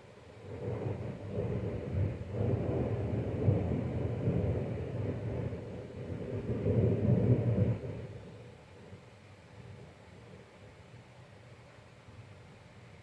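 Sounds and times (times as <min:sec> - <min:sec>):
thunder rumbling: 0:00.4 - 0:08.1.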